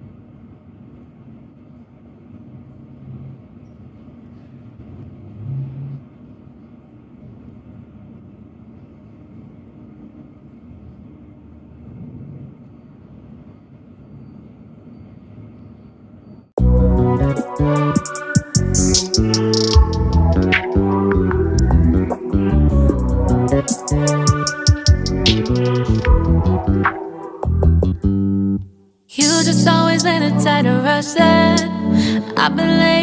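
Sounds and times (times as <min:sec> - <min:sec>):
low outdoor rumble: 0:18.6 - 0:28.6.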